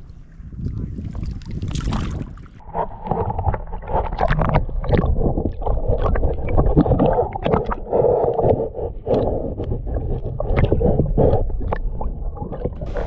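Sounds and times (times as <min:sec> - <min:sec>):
water splashing and gurgling: 0:00.0 - 0:13.0
steady low rumble: 0:10.9 - 0:13.0.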